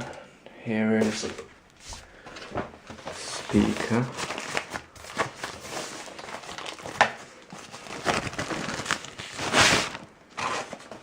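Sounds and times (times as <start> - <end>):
packaging crinkling and rustling: 2.3 - 11.0.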